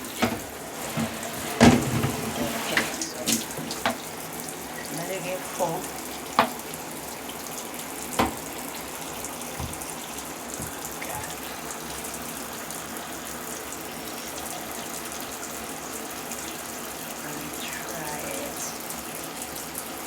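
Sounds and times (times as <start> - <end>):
water running from a tap: 0.0 - 20.0
sharp knocks: 9.6 - 9.9.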